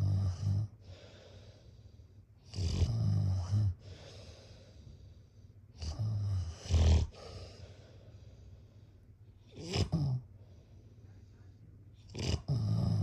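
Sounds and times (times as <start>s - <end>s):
quiet breathing: 0.0s - 2.5s, 3.2s - 9.6s, 10.2s - 13.0s
person snoring: 12.1s - 13.0s.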